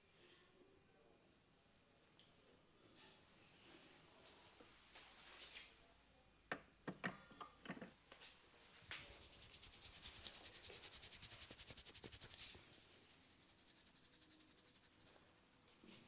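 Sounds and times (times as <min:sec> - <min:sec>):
hands rubbing hair and scalp: 0:08.8 - 0:16.0.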